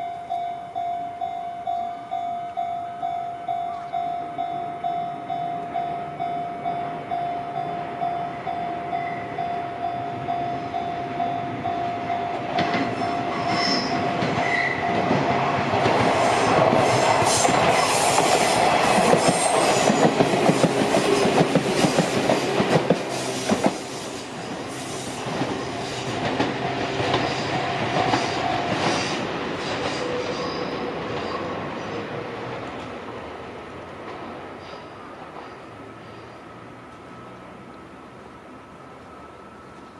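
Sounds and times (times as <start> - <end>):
level-crossing bell dinging: 0.0 - 15.6
train wheels clattering: 12.3 - 33.0.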